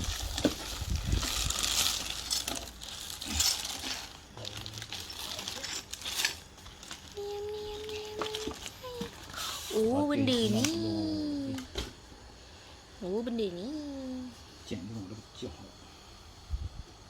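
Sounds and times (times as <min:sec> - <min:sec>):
bubble wrap crinkling: 0:00.0 - 0:11.8.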